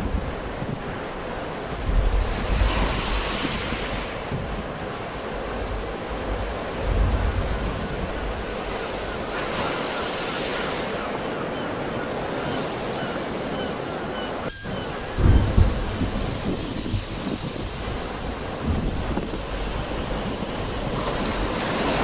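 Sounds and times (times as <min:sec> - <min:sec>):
sea waves surging: 0:00.0 - 0:22.0
wind buffeting microphone: 0:00.0 - 0:22.0.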